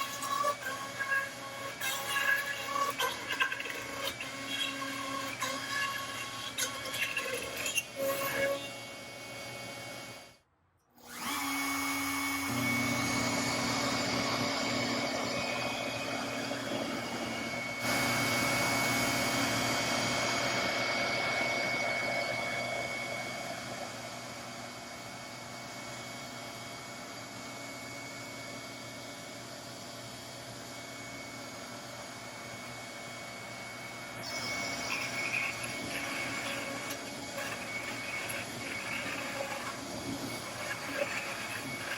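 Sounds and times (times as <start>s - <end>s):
router spindle whine: 0.0s - 10.4s, 11.0s - 41.9s
machine noise: 34.2s - 41.9s.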